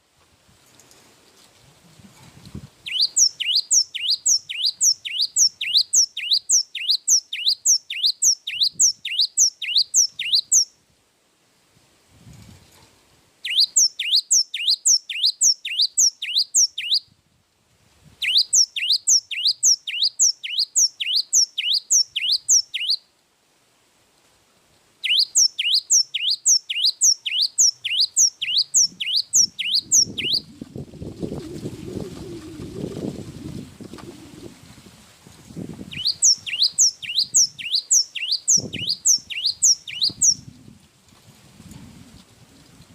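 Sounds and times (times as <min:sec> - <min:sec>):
bird whistling sharp notes: 0:02.8 - 0:10.7, 0:13.4 - 0:17.0, 0:18.2 - 0:23.0, 0:25.0 - 0:30.5, 0:35.9 - 0:40.5.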